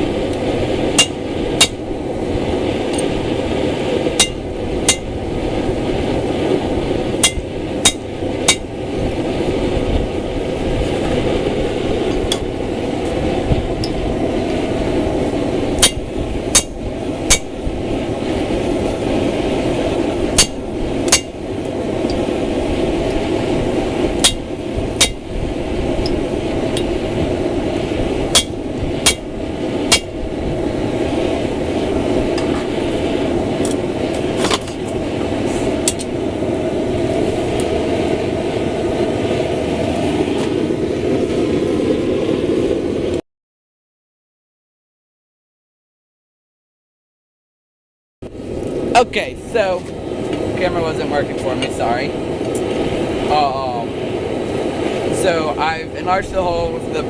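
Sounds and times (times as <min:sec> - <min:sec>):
gas forge burner rushing: 0:00.0 - 0:43.2, 0:48.3 - 0:57.0
hammer ringing on steel: 0:01.0 - 0:01.8, 0:04.2 - 0:05.1, 0:07.2 - 0:08.7, 0:15.8 - 0:17.5, 0:20.4 - 0:21.3, 0:24.2 - 0:24.4.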